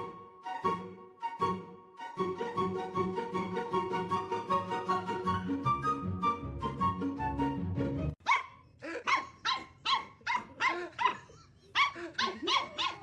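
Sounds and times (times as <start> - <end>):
background music: 0.0 - 8.2
dog barking: 8.2 - 13.0.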